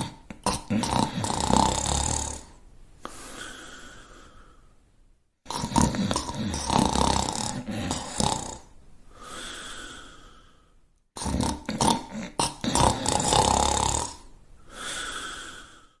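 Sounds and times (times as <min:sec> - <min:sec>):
rattling snore: 0:00.0 - 0:02.6, 0:05.5 - 0:08.7, 0:11.2 - 0:14.2.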